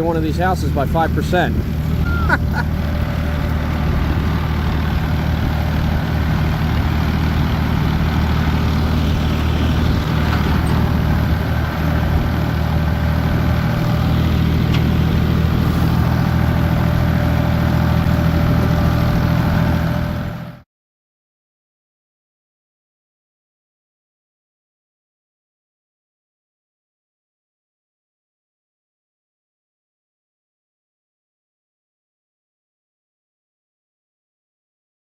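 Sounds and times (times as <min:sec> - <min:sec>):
heavy vehicle engine humming: 0:00.0 - 0:20.6
road and wind noise: 0:00.0 - 0:20.6.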